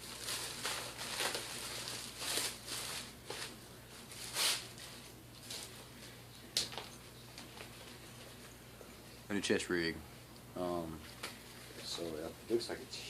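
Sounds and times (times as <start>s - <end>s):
packaging rustling and crinkling: 0.0s - 8.5s.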